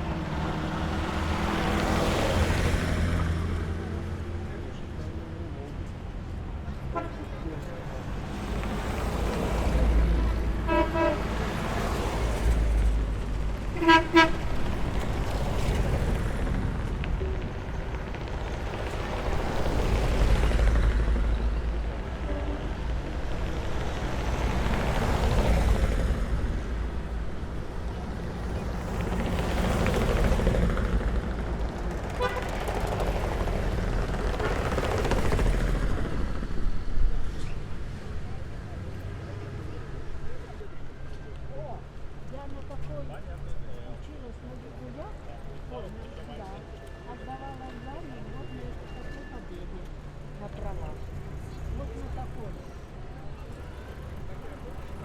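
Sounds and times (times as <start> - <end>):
rumble of passing engines: 0.0 - 55.0
vehicle horn toots: 10.6 - 11.6, 13.8 - 14.6, 32.2 - 32.5.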